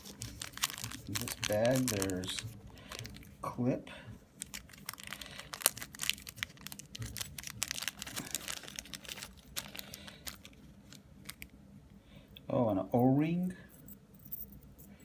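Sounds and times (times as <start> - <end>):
plastic bag crinkling: 0.0 - 3.5, 4.4 - 11.5.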